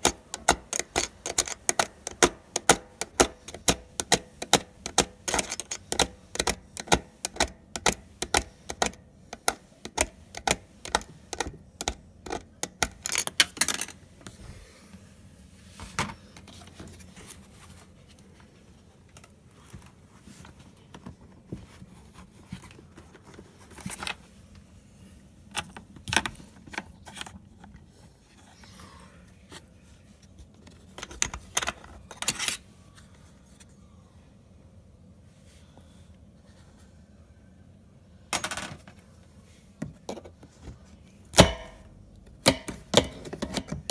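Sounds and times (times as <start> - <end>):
metallic clicks and clatter of tools: 0.0 - 14.0.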